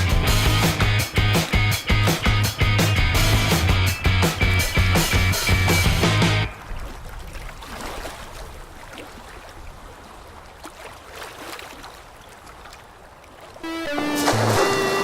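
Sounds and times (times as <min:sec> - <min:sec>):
guitar music: 0:00.0 - 0:06.5, 0:13.6 - 0:15.0
water washing: 0:00.0 - 0:15.0
small splashes: 0:06.5 - 0:15.0.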